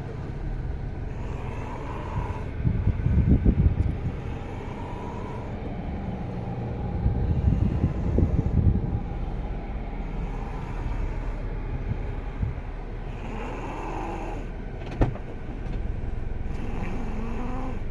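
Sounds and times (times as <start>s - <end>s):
man snoring: 1.1s - 2.6s, 4.1s - 5.6s, 10.0s - 11.5s, 13.0s - 14.6s, 16.5s - 17.9s.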